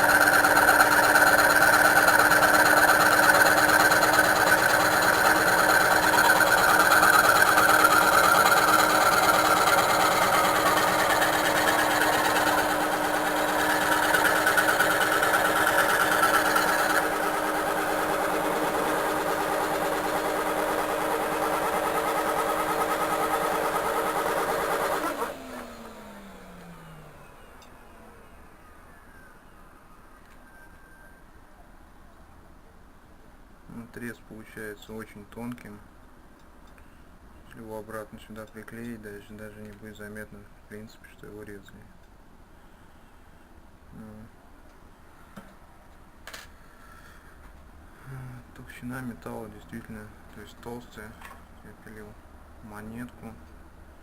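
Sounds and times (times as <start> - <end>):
scroll saw cutting steel: 0.0 - 26.6.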